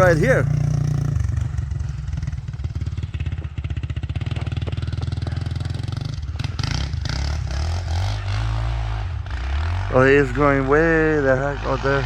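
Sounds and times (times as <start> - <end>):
quad bike engine putter: 0.0 - 8.4.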